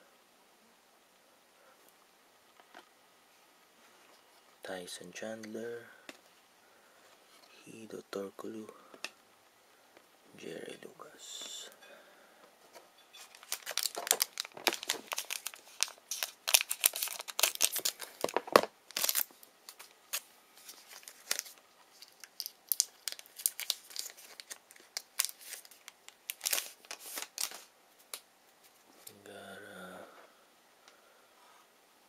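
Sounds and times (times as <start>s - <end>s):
wrapper tearing and crinkling: 13.2s - 28.2s.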